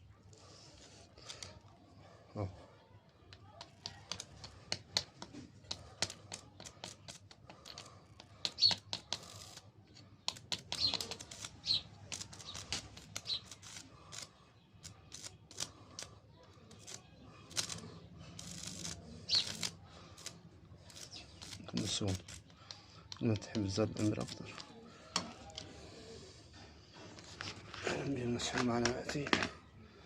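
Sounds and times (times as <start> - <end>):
sharp clicks and taps: 3.3 - 9.6, 10.2 - 11.5, 20.9 - 25.7.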